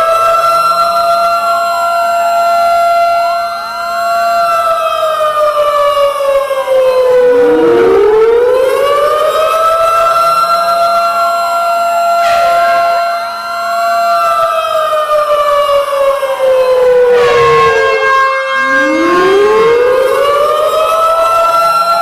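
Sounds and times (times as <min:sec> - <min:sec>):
wailing tornado siren: 0:00.0 - 0:22.0
other siren tones: 0:05.8 - 0:11.3, 0:12.2 - 0:22.0
cluster of higher tones: 0:07.1 - 0:10.4, 0:12.2 - 0:13.5, 0:17.1 - 0:22.0.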